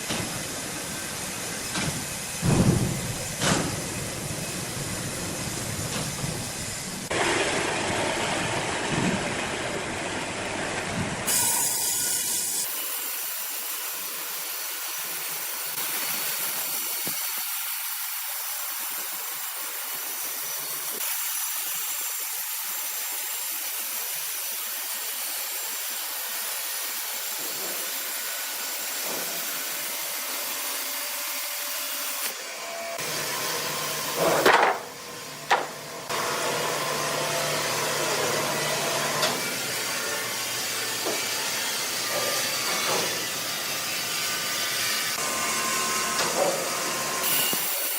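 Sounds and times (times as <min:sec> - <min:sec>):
sawmill saw cutting: 0:00.0 - 0:10.6, 0:11.2 - 0:47.9
machinery humming: 0:00.0 - 0:11.3
loud knocks: 0:01.7 - 0:03.9.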